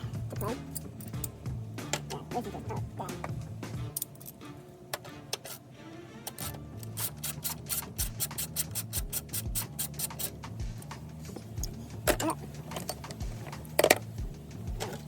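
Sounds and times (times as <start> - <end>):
bass notes: 0.0 - 4.0
ticking hi-hats: 6.4 - 12.0.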